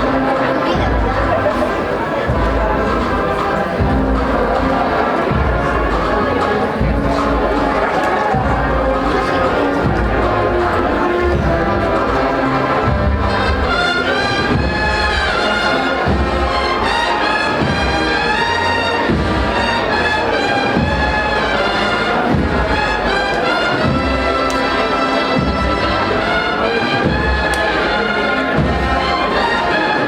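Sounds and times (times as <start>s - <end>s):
brass marching band: 0.0s - 30.0s
bass drum beats: 0.7s - 15.4s.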